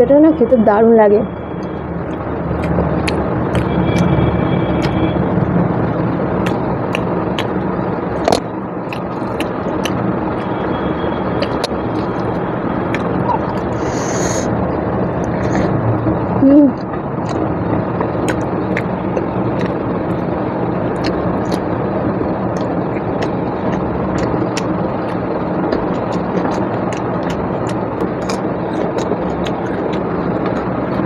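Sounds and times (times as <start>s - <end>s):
steady background noise: 0.0s - 31.0s
person chewing close to microphone: 1.6s - 4.1s, 4.8s - 5.0s, 6.4s - 7.6s, 8.2s - 10.6s, 11.3s - 14.5s, 15.1s - 15.7s, 16.8s - 17.5s, 18.2s - 20.3s, 21.0s - 31.0s.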